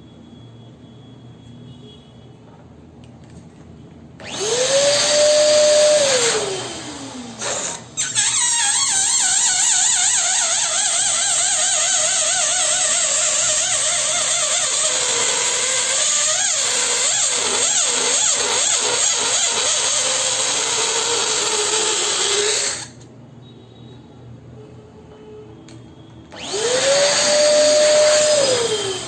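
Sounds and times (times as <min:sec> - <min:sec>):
electric balloon pump hissing: 0:04.2 - 0:23.0, 0:26.3 - 0:29.0.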